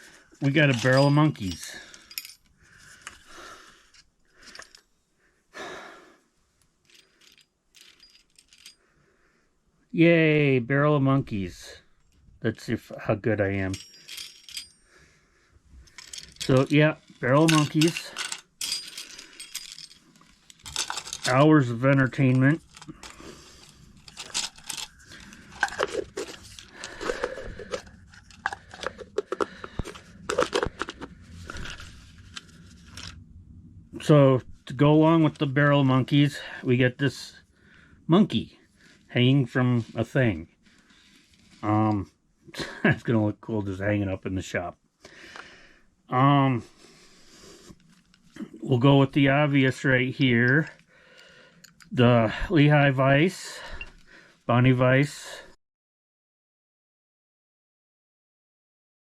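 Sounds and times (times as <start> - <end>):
plastic toy rustling and clicking: 15.9 - 21.4, 22.2 - 33.2.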